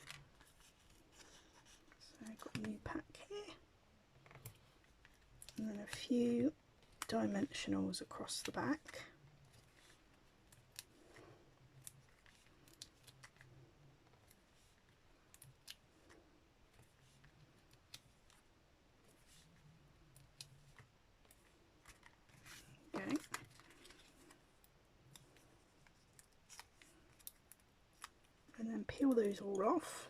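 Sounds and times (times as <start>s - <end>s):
paper handling sounds: 0.0s - 3.0s, 4.2s - 29.8s.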